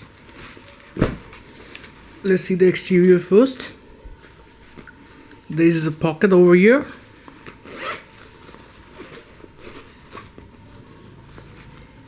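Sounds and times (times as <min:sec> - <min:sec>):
backpack rustling: 0:00.0 - 0:02.2, 0:07.1 - 0:12.0.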